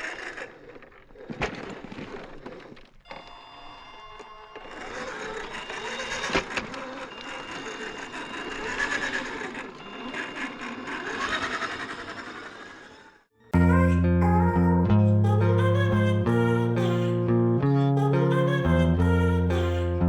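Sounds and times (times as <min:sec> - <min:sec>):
toy truck motor whining: 0:03.1 - 0:13.2
guitar music: 0:13.6 - 0:20.0.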